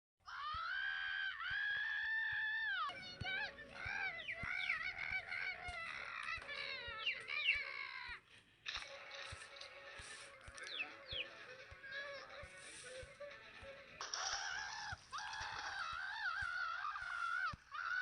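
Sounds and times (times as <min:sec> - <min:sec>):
distorted high-pitched cartoon voice: 0:02.6 - 0:08.2.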